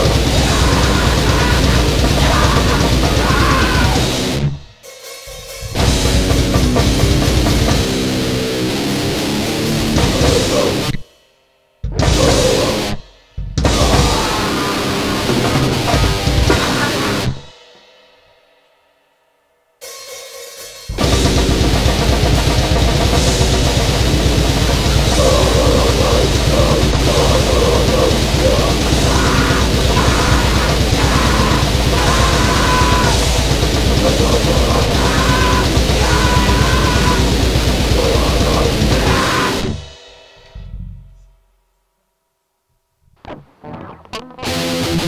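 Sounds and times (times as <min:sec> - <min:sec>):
distorted guitar: 0:00.0 - 0:04.7, 0:05.3 - 0:11.0, 0:11.8 - 0:17.5, 0:20.9 - 0:41.4, 0:43.1 - 0:45.0
cymbals: 0:00.0 - 0:06.7, 0:10.2 - 0:41.5
pounding drums: 0:00.0 - 0:08.4, 0:09.9 - 0:10.9, 0:11.8 - 0:17.8, 0:19.9 - 0:40.5.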